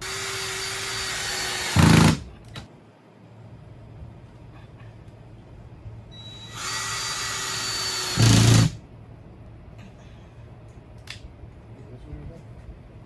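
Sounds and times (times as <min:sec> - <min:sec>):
power drill driving screw: 0:00.0 - 0:02.2, 0:06.4 - 0:08.8.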